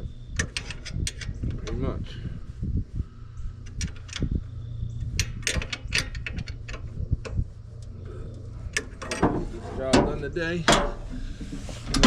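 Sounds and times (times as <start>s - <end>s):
steady low hum: 0.0s - 12.0s
sharp irregular clicks and knocks: 0.4s - 1.8s, 3.6s - 4.3s, 5.0s - 11.0s.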